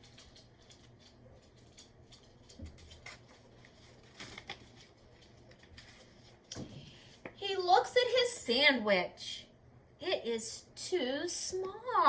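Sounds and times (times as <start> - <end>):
book pages turning: 2.7 - 6.4.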